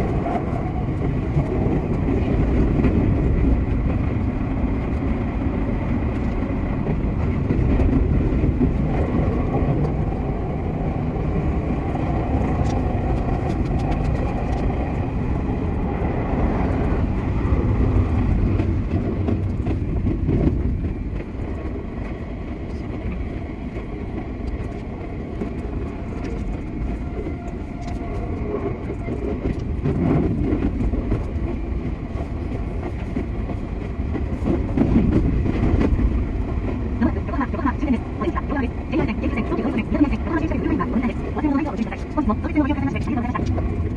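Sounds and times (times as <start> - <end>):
electric train wheels rumbling: 0.0 - 43.9
sharp track clicks: 11.8 - 15.1, 22.9 - 43.9.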